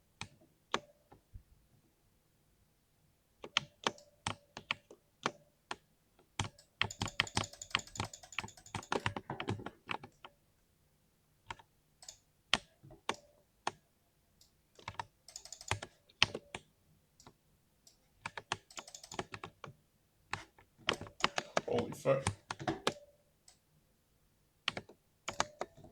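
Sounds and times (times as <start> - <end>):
mechanical keyboard typing: 6.4 - 10.2, 14.8 - 17.4, 18.2 - 23.0, 24.7 - 25.9.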